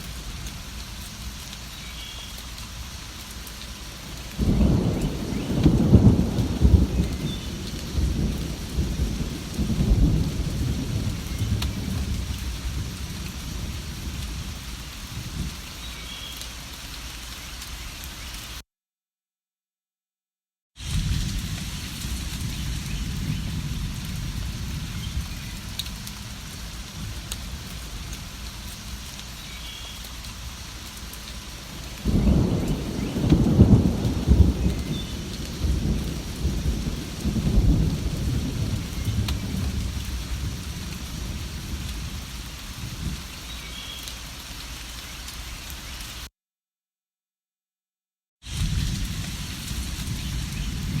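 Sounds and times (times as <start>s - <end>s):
steady rain: 0.0s - 18.6s, 20.8s - 46.3s, 48.4s - 51.0s
thunder rumbling: 4.0s - 15.6s, 20.8s - 29.0s, 31.6s - 43.3s, 48.5s - 51.0s.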